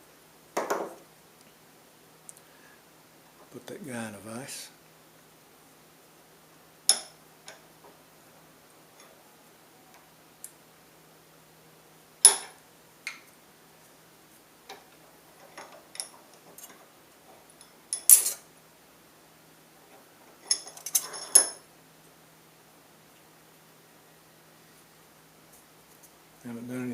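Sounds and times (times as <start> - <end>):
metallic clicks and clinks: 15.4 - 16.8, 20.4 - 21.6.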